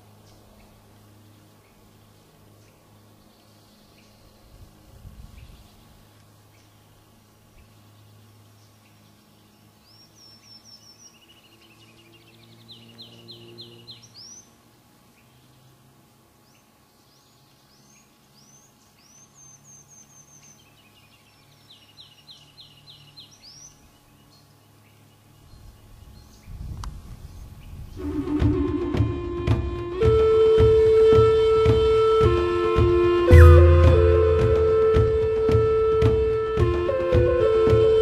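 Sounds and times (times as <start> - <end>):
small birds singing: 0.0 - 28.1
music: 28.0 - 38.0.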